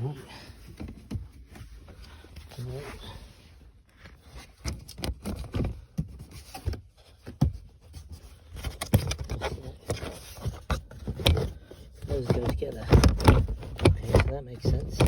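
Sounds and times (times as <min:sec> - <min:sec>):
plastic trim knocking and clicking: 0:12.2 - 0:15.0.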